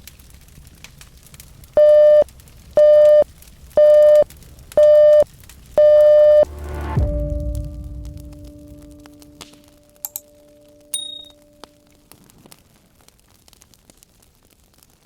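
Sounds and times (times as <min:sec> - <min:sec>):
faint fire crackling: 0:00.0 - 0:15.0
electronic timer beeps: 0:01.8 - 0:02.2, 0:02.8 - 0:03.2, 0:03.8 - 0:04.2, 0:04.8 - 0:05.2, 0:05.8 - 0:06.5
bell ringing: 0:10.0 - 0:11.7.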